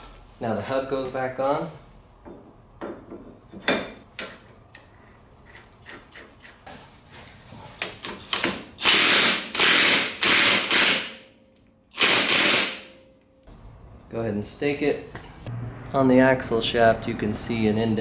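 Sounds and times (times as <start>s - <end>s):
impact wrench bursts: 8.8s - 11.2s, 11.9s - 13.0s.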